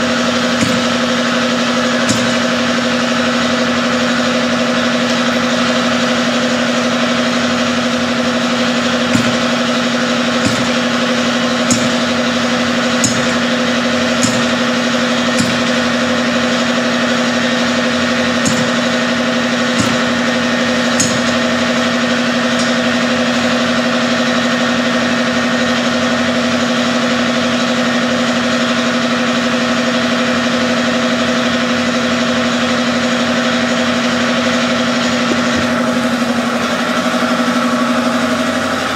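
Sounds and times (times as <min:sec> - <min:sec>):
engine humming: 0:00.0 - 0:24.6
sharp clicks: 0:02.1 - 0:02.6, 0:11.7 - 0:12.1, 0:13.0 - 0:13.6, 0:14.2 - 0:14.7, 0:19.8 - 0:20.3, 0:20.9 - 0:21.5.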